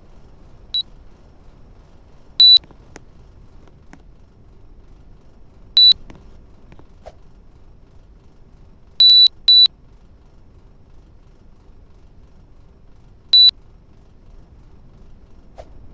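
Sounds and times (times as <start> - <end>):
air conditioner beeps: 2.4 - 2.8, 5.8 - 6.2, 9.0 - 9.7
faint steady hum: 2.4 - 3.0.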